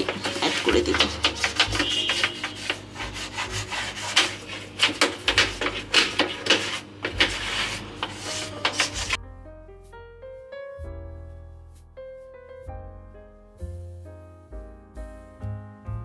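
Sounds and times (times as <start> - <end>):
scrubbing and scraping: 0.0 - 9.2
soft piano music: 7.3 - 16.0.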